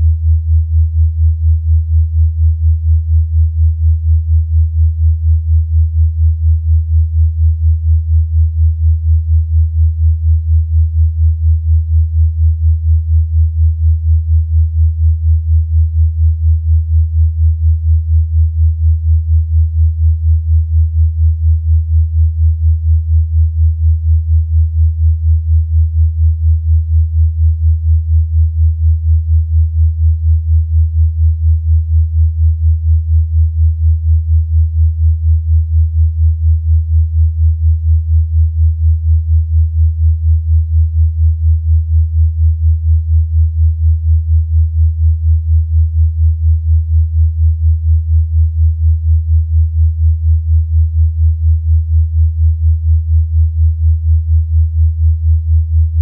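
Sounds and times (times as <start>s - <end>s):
low pulsing sine tone: 0.0s - 56.0s.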